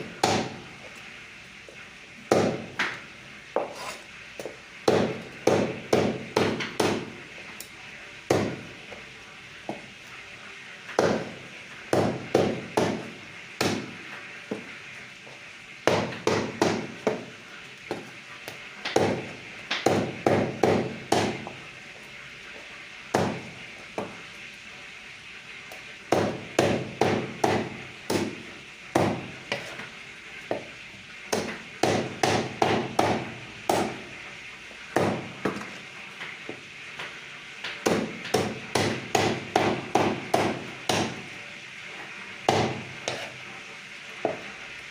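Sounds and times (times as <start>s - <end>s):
cleaver chopping on a block: 0.2s - 0.5s, 2.3s - 2.9s, 4.9s - 7.1s, 11.0s - 11.3s, 18.9s - 21.4s, 26.1s - 28.4s, 29.0s - 29.7s, 31.3s - 34.0s, 37.8s - 41.2s, 42.5s - 43.2s.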